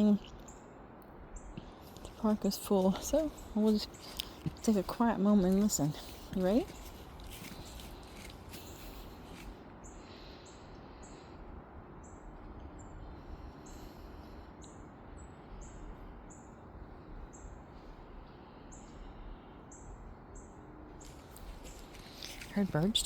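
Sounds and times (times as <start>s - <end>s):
low background rumble: 0.0s - 23.0s.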